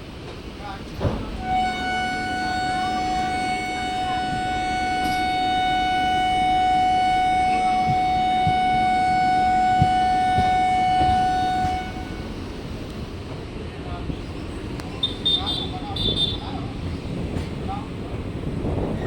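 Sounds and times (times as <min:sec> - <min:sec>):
faint low engine drone: 0:00.5 - 0:18.9
locomotive horn long blast: 0:01.4 - 0:12.5, 0:15.0 - 0:16.5.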